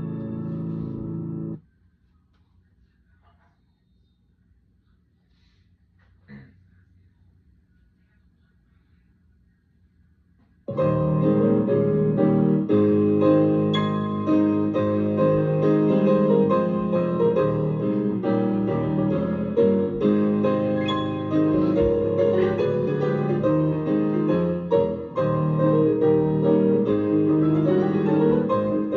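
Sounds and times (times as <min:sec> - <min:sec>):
piano chords: 0:00.0 - 0:01.6, 0:10.7 - 0:28.9.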